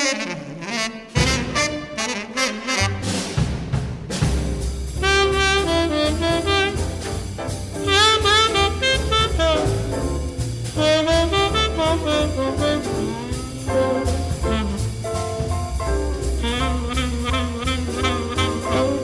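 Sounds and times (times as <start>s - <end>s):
horns playing swing jazz: 0.0s - 19.0s
bass line: 4.2s - 19.0s.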